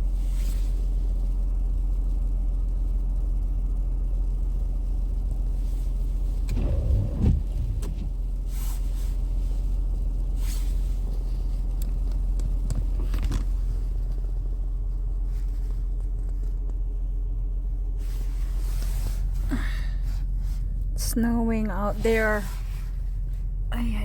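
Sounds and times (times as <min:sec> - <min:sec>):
low mechanical hum: 0:00.0 - 0:24.0
thumps: 0:06.4 - 0:08.3
hissing rustles: 0:06.4 - 0:09.3.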